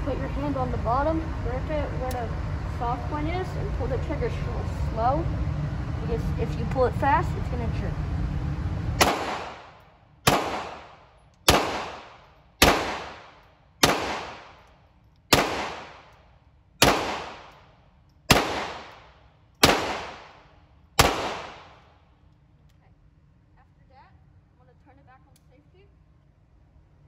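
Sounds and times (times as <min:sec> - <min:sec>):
pistol shots: 0:09.0 - 0:14.7, 0:15.3 - 0:16.2, 0:16.8 - 0:17.7, 0:18.3 - 0:22.0.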